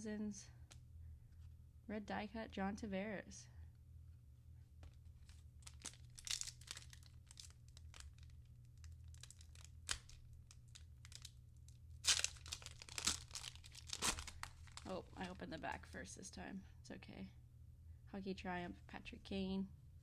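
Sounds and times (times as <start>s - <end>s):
wrapper crinkling and tearing: 5.2s - 11.4s, 12.0s - 15.9s.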